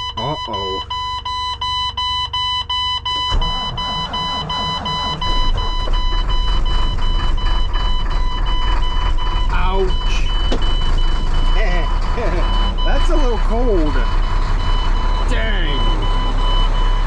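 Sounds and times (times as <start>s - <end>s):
dashboard warning buzzer beeping: 0.0s - 17.0s
engine cranking and starting: 3.1s - 15.2s.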